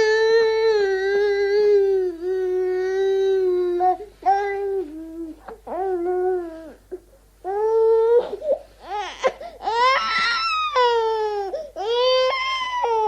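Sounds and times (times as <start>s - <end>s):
baby crying: 7.5s - 13.0s.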